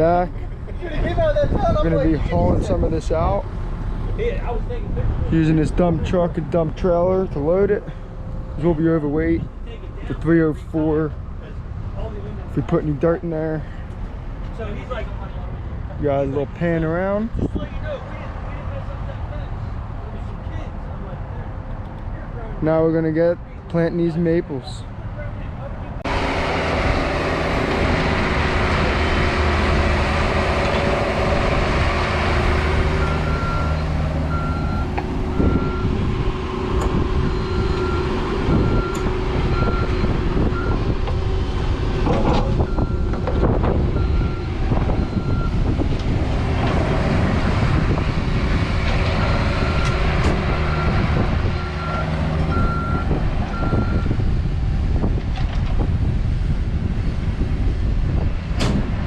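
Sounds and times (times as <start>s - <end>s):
diesel engine running: 25.9s - 59.0s
backup alarm beeping: 33.0s - 36.0s, 37.2s - 41.0s, 44.0s - 45.7s, 49.3s - 54.2s.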